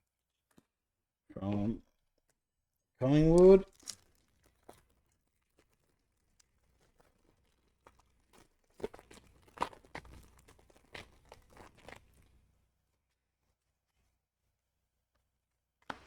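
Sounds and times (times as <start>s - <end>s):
card pack wrapper tearing: 3.7s - 5.0s.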